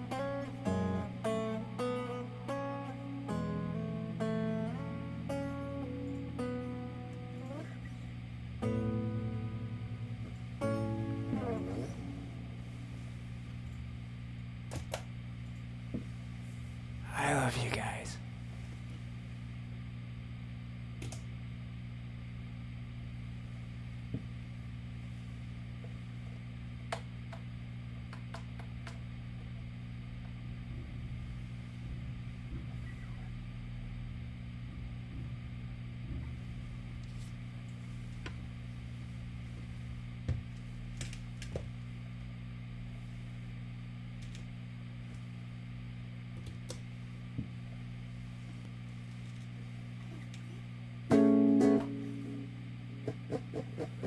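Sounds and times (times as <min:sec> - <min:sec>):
low electrical hum: 0:00.0 - 0:54.0
faint room noise: 0:15.5 - 0:19.7.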